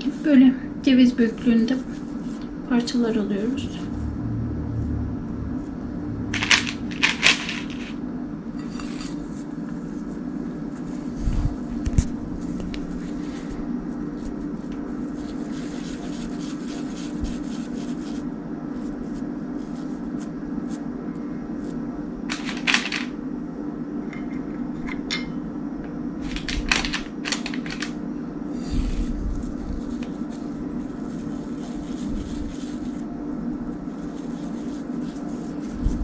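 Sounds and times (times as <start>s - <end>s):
low mechanical hum: 0.0s - 36.0s
hands handling sticky dough: 8.7s - 23.1s, 28.6s - 36.0s.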